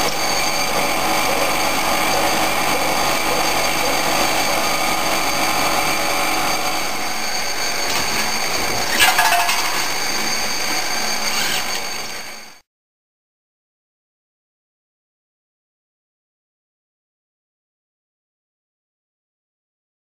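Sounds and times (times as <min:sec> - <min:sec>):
machine running with whines: 0:00.0 - 0:12.6.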